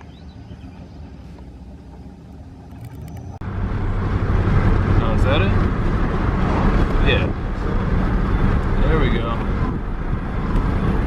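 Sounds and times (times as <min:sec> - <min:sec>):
road noise of moving vehicle: 0:00.0 - 0:11.0
vehicle engine rumbling: 0:00.0 - 0:11.0.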